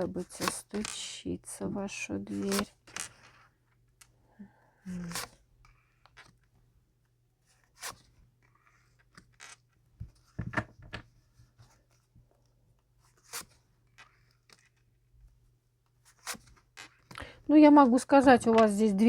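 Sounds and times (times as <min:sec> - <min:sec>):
soft card rustling: 0:00.0 - 0:01.2, 0:01.8 - 0:04.1, 0:04.9 - 0:06.6, 0:07.4 - 0:17.4
cards snapping and sliding: 0:02.3 - 0:03.4, 0:07.7 - 0:08.2, 0:08.8 - 0:09.6, 0:13.1 - 0:14.8, 0:16.1 - 0:17.2.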